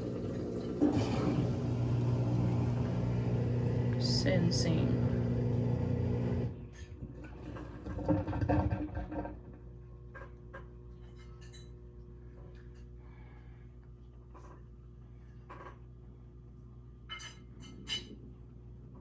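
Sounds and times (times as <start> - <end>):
washing machine motor humming: 0.0 - 9.6.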